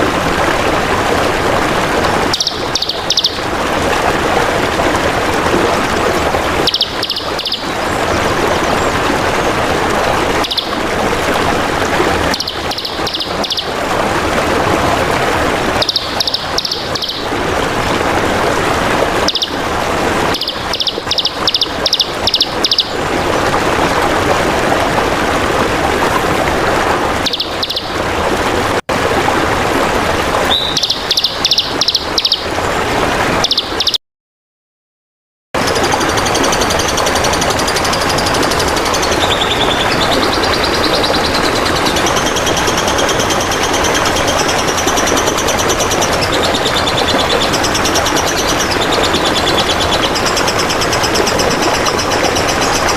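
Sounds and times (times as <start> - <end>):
trickling water: 0.0 - 34.0, 35.6 - 52.9
bird chirping: 2.3 - 3.4, 6.6 - 7.9, 10.4 - 10.7, 12.4 - 13.7, 15.8 - 17.3, 19.3 - 19.6, 20.4 - 22.9, 27.2 - 27.9, 30.5 - 32.4, 33.4 - 34.0.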